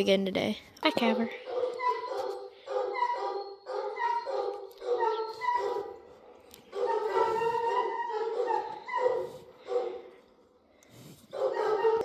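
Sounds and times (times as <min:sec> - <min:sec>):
dog whining: 0:01.5 - 0:09.7, 0:11.4 - 0:12.0.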